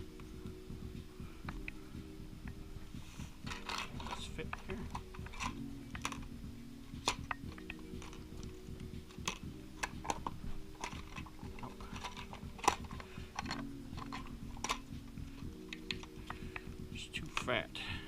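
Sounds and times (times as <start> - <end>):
steady low hum: 0.0 - 18.0
metal parts clicking: 3.4 - 6.3, 7.0 - 16.7.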